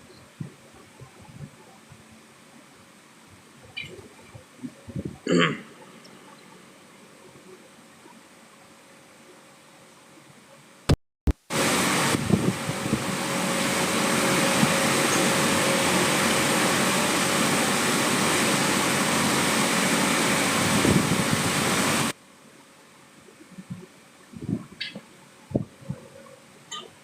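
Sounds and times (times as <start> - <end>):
fan-like rushing noise: 11.5 - 22.2.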